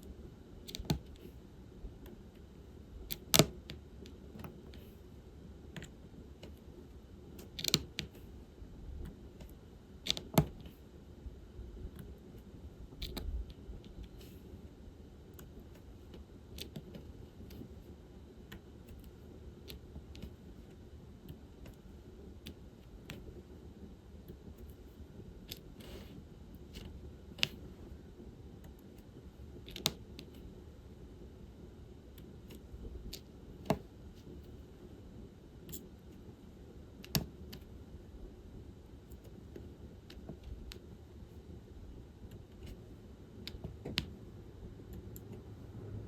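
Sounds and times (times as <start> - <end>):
small plastic clicks and taps: 0.7 - 1.3, 3.1 - 4.9, 7.4 - 8.2, 9.1 - 10.8, 29.7 - 30.4, 37.0 - 37.7, 43.4 - 44.1.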